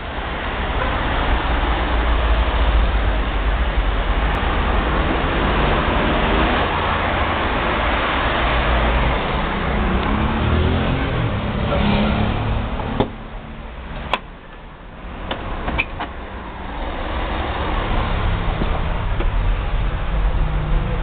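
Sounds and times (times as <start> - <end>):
diesel engine running: 0.0 - 21.0.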